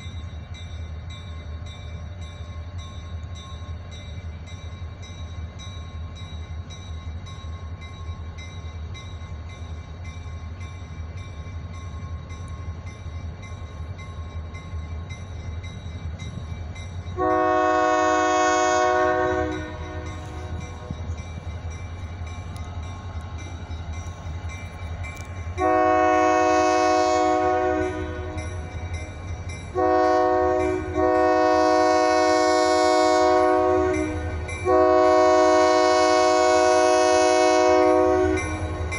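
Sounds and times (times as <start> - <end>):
low rumble of train: 0.0 - 38.9
locomotive air horn: 17.2 - 20.6, 25.6 - 28.7, 29.8 - 38.9.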